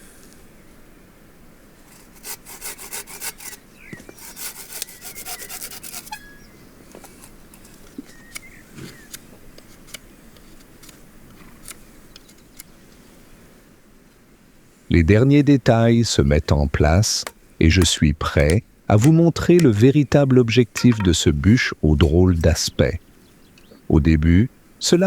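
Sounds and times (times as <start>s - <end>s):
cutting tool strokes on log: 1.9s - 6.4s, 17.1s - 21.3s
knocks and scrapes on wood: 17.2s - 21.2s.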